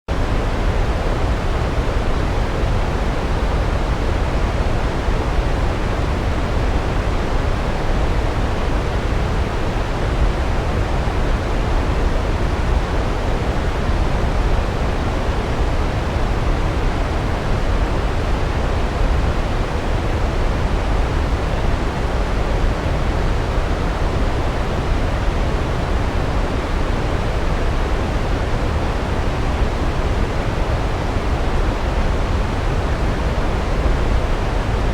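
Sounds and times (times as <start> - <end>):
waterfall rumbling: 0.1 - 34.9.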